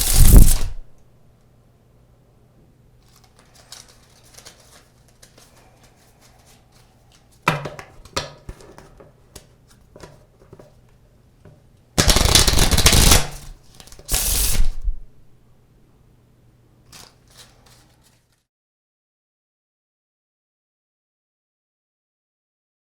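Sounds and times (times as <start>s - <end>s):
playing cards shuffling: 0.0s - 0.8s, 3.0s - 7.4s, 12.0s - 14.9s, 16.9s - 18.4s
faint steady hum: 0.0s - 18.4s.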